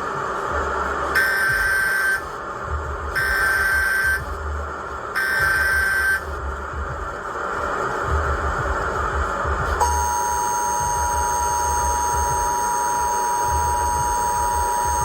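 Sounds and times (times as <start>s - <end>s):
harsh static noise: 0.0s - 15.0s
two-tone alert signal: 3.2s - 4.3s, 5.2s - 6.2s, 9.8s - 15.0s.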